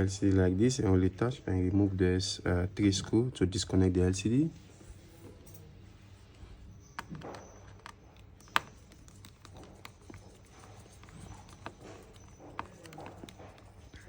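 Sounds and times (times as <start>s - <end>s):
metal tools clicking and tapping: 5.4s - 5.8s.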